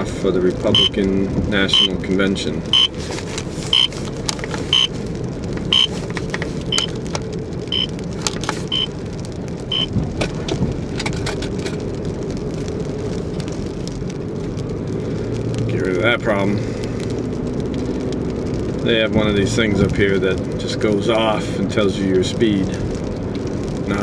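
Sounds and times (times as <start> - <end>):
car road noise: 0.0 - 24.0
high-pitched electronic beep: 0.8 - 1.0, 1.7 - 1.9, 2.7 - 2.9, 3.7 - 3.9, 4.7 - 4.9, 5.7 - 5.9, 6.7 - 6.9.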